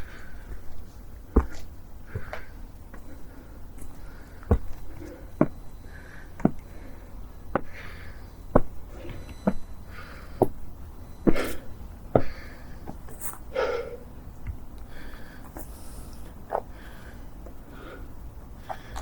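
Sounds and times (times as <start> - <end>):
footsteps clicking: 0.5 - 3.2, 6.4 - 6.9, 7.5 - 10.6, 11.2 - 13.4.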